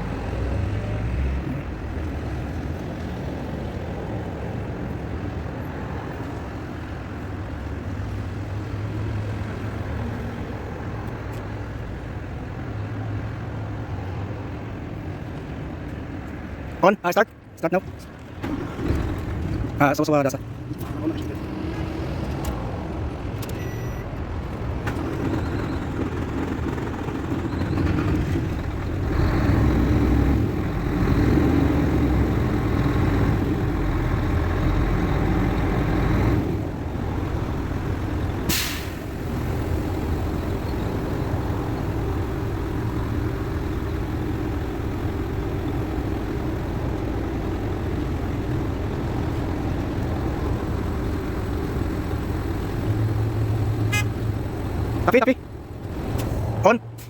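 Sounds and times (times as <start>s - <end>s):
truck diesel engine revving and idling: 0.0s - 4.9s, 17.6s - 57.0s
short sharp air hiss: 38.5s - 39.0s.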